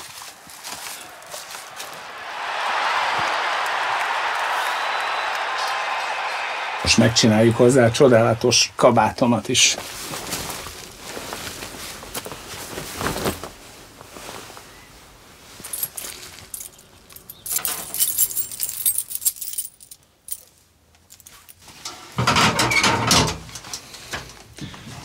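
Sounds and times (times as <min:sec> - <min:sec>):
coat fabric rustling: 0:09.7 - 0:16.8
metallic jingling: 0:15.8 - 0:20.0.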